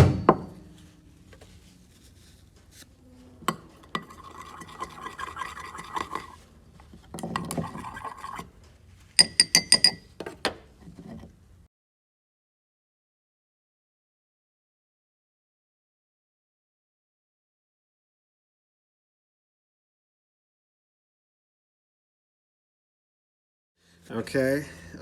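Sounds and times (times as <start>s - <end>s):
utensil stirring and scraping in cup: 1.4s - 10.1s, 10.8s - 11.3s
ringing clinks against cup: 9.2s - 10.1s.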